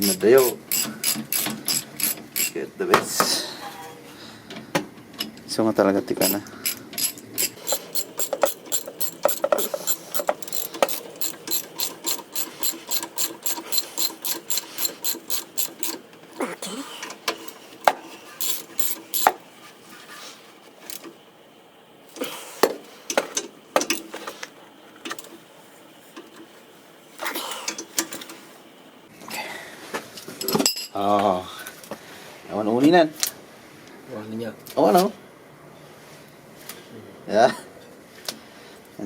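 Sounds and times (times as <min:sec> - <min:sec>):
ratchet wrench clicking: 0:00.0 - 0:02.6, 0:06.2 - 0:16.4, 0:17.0 - 0:19.4.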